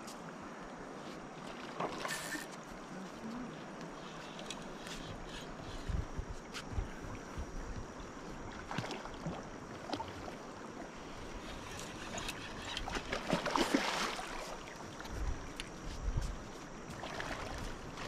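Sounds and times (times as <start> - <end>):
river water rushing: 13.1 - 14.8.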